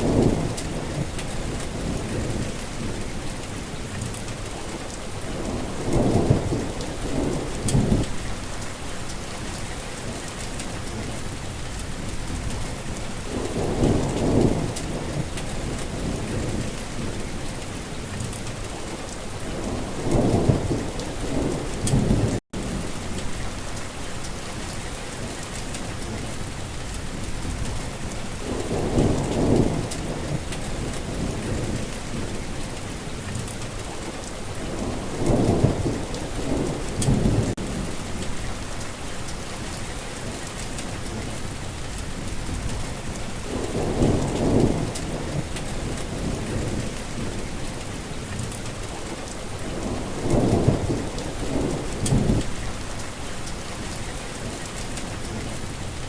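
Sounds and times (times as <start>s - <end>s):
thunder rumbling: 0.0s - 24.8s, 25.8s - 56.0s
heavy rain: 0.0s - 56.0s.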